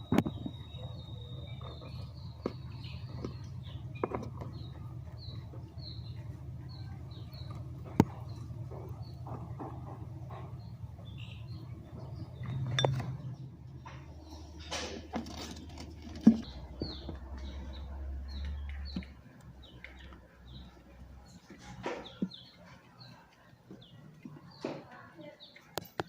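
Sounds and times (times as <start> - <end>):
low steady hum: 0.0 - 25.1
small birds chirping: 0.0 - 26.0.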